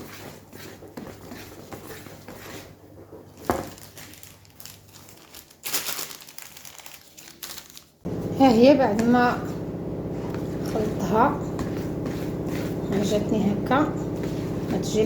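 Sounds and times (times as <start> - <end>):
packet crinkling and tearing: 3.4 - 8.0.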